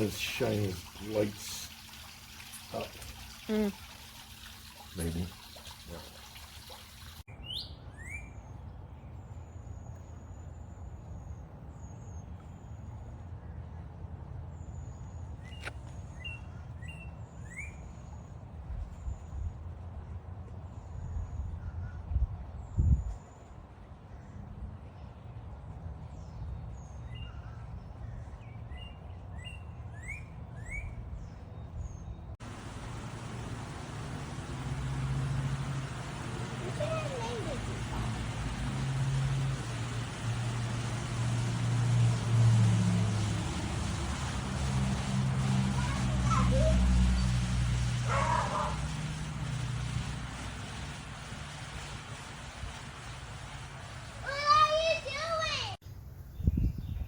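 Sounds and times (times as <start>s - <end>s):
birds chirping: 0.0s - 8.4s, 32.0s - 57.0s
low steady rumble: 32.4s - 54.9s.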